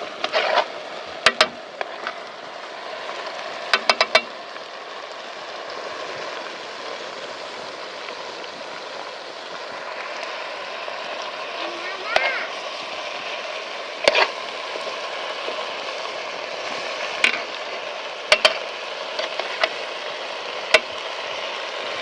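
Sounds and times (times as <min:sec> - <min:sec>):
food sizzling in pan: 0:00.0 - 0:22.0
metal utensil clinking on pan: 0:03.8 - 0:04.3, 0:18.3 - 0:18.6.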